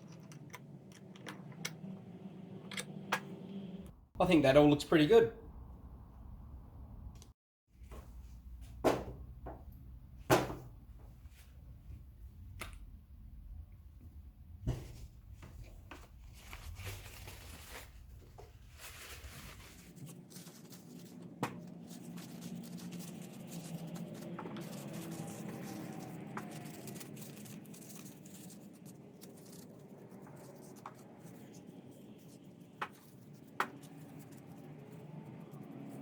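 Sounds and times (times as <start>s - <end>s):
low hum: 5.4s - 7.3s.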